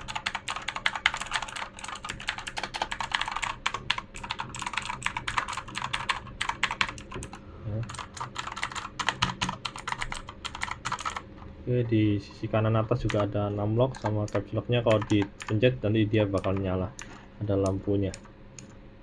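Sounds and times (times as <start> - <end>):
clicky mechanical keyboard typing: 0.0 - 11.2, 13.0 - 15.7, 16.3 - 18.8.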